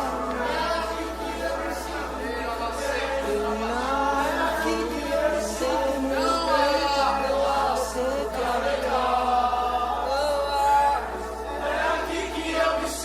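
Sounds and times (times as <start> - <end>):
group singing worship song: 0.0 - 13.0
musical accompaniment: 0.0 - 13.0.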